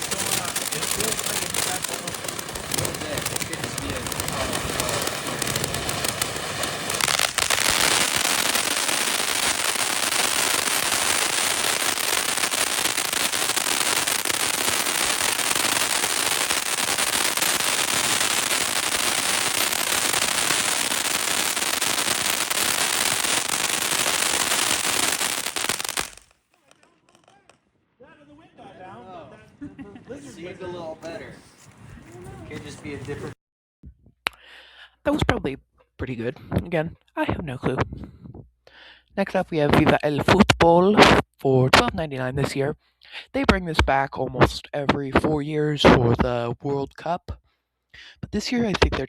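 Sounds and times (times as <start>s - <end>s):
fireworks crackling: 0.0s - 27.7s, 31.1s - 33.4s.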